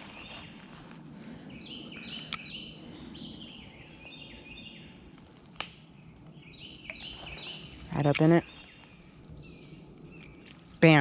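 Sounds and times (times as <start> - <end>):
birds chirping: 0.0 - 11.0.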